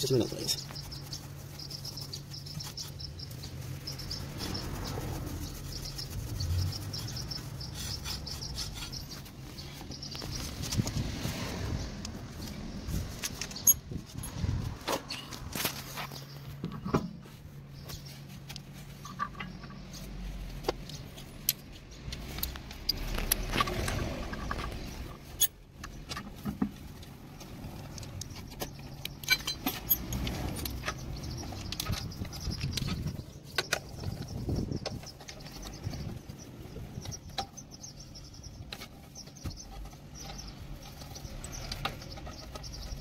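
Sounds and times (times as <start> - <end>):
metallic clinks of bolts and tools: 13.4 - 14.4, 29.0 - 31.0.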